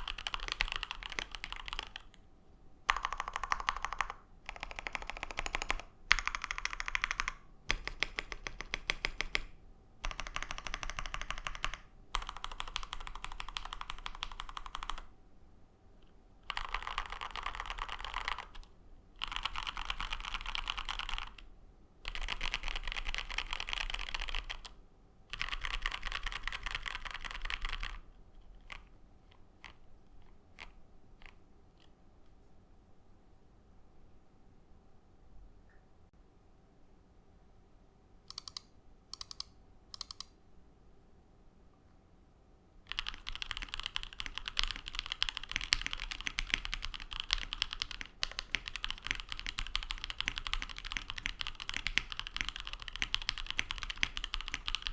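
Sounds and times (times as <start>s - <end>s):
mechanical keyboard typing: 0.0s - 2.2s, 2.9s - 15.1s, 16.4s - 31.4s, 38.3s - 40.3s, 42.9s - 54.9s.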